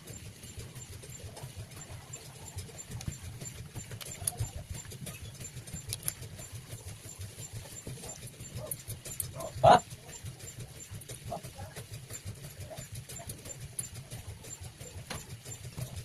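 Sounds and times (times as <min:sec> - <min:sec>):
dog barking: 0:08.0 - 0:10.2.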